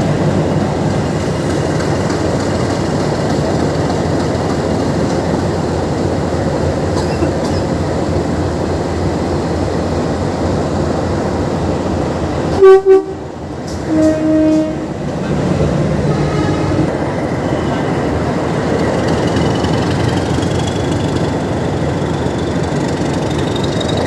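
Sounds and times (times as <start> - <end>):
diesel locomotive engine rumbling: 0.0 - 24.0
locomotive horn blasts: 12.6 - 15.0, 16.1 - 16.9.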